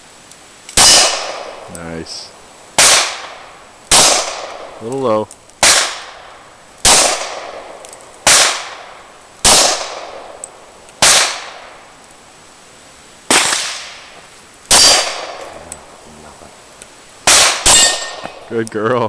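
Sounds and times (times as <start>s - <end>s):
pistol shots echoing: 0.8s - 1.7s, 2.8s - 4.9s, 5.6s - 11.8s, 13.3s - 14.1s, 14.7s - 15.5s, 17.2s - 18.5s.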